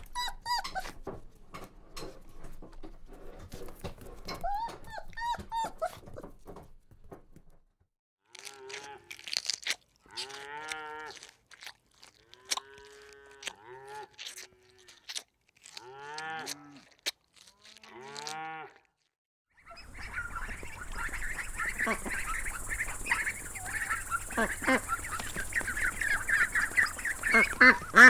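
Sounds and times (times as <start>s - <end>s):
calf bawling: 0.0s - 1.0s, 4.2s - 6.3s.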